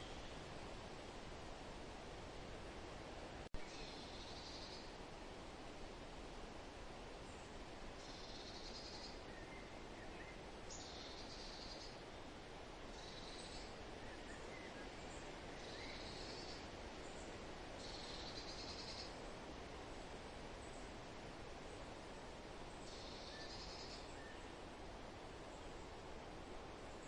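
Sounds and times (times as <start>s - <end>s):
wind rustling: 0.0s - 27.0s
faint bird chirps: 3.6s - 5.0s, 8.0s - 12.0s, 12.9s - 19.2s, 22.8s - 24.5s.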